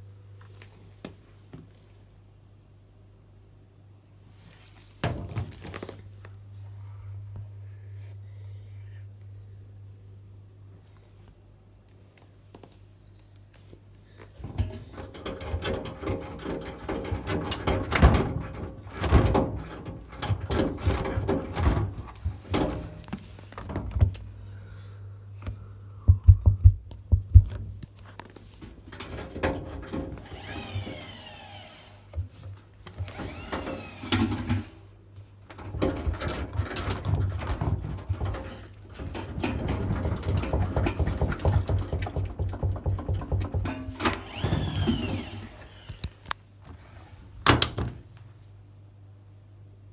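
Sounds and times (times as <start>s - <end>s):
washing machine humming: 14.3s - 49.9s
knocking and clattering: 14.5s - 24.2s, 35.5s - 45.3s.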